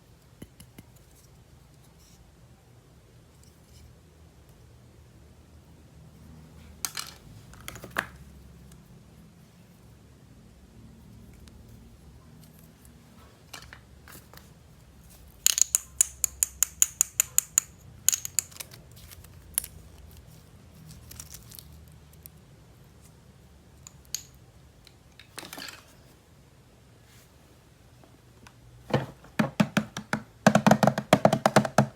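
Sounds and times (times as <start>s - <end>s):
toy pieces clicking: 15.4s - 20.1s, 23.8s - 24.4s.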